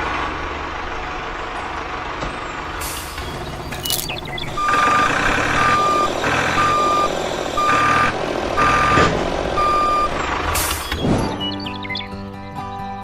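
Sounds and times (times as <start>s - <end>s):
truck reversing alarm beeping: 3.2s - 11.1s.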